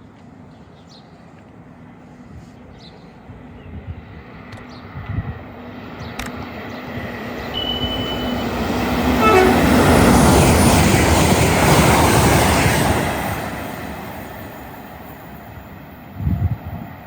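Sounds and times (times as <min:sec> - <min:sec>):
train passing: 0:03.1 - 0:17.0
high train horn toot: 0:07.5 - 0:10.3.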